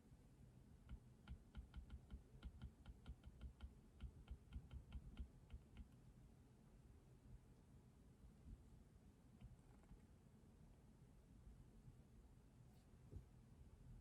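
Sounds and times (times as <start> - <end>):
faint keyboard typing: 0.8 - 6.0.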